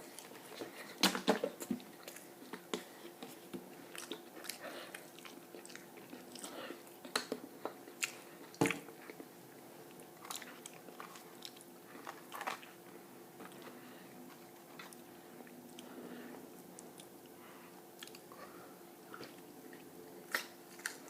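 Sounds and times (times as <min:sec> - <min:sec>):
person chewing: 0:00.0 - 0:12.8, 0:13.4 - 0:17.4, 0:18.0 - 0:18.5, 0:19.1 - 0:21.0.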